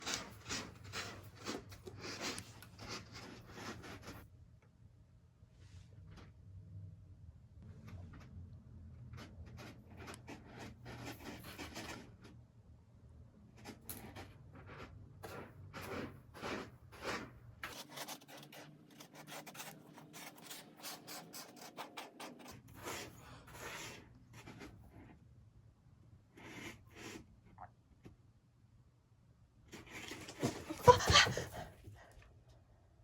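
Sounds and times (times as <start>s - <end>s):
scratching and rubbing noises: 0.0s - 4.2s, 7.8s - 12.4s, 13.5s - 25.3s, 29.7s - 31.8s.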